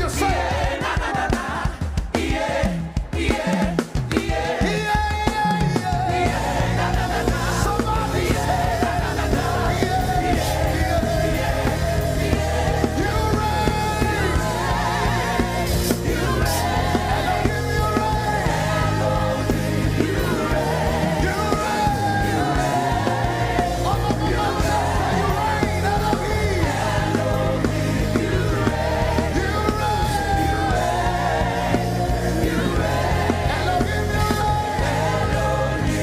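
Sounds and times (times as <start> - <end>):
instruments with steady bass: 0.0 - 36.0
voices singing worship music: 0.0 - 36.0.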